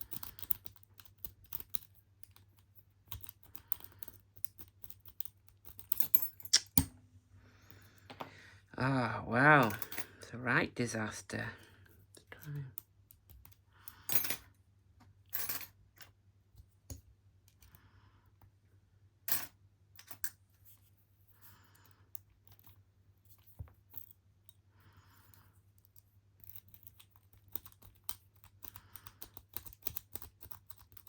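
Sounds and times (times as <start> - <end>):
lock picks clicking in padlock: 0.0 - 2.4, 3.0 - 6.9, 25.9 - 31.0.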